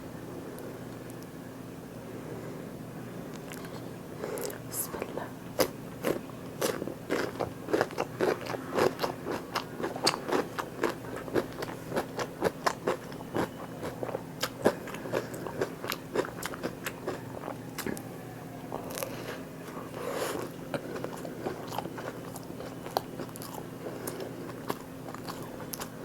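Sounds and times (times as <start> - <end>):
person chewing crunchy food: 5.6 - 26.0.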